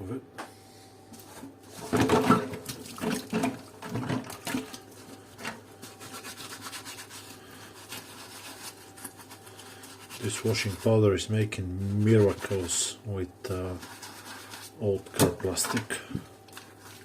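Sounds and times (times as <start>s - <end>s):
scrubbing plastic parts: 1.2s - 17.0s.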